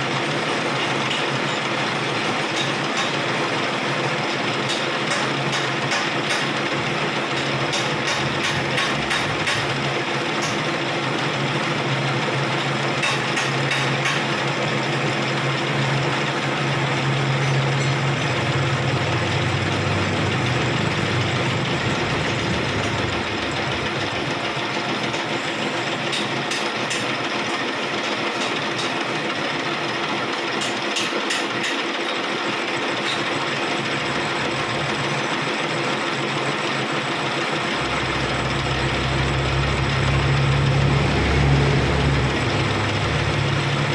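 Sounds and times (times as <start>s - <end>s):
low hum: 37.8s - 43.9s.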